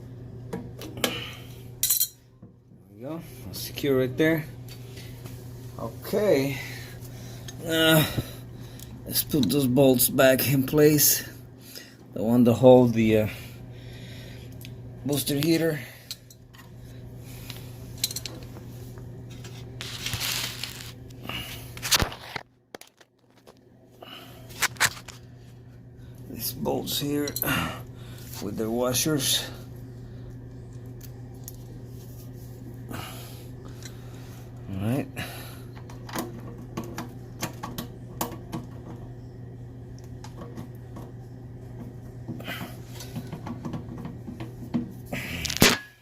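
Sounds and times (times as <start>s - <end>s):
steady low hum: 0.0s - 46.0s
metal bolts and washers rustling: 1.8s - 2.2s, 18.0s - 18.5s.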